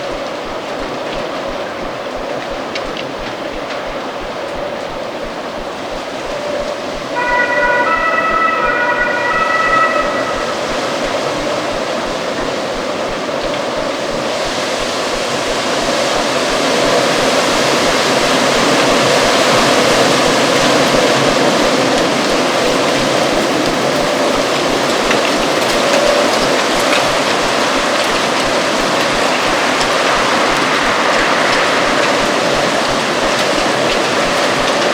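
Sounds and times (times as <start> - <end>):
strong gusty wind: 0.0 - 34.9
high whistle: 6.4 - 12.1.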